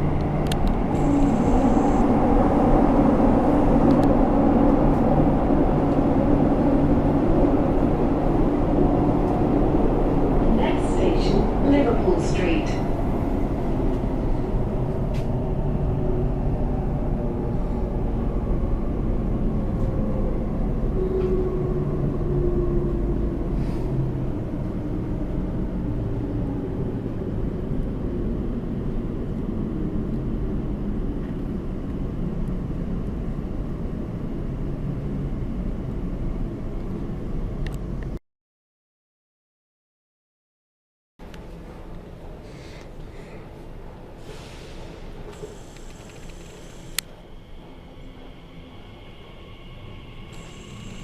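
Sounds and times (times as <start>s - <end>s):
faint train tones: 10.5s - 15.4s, 41.4s - 51.0s.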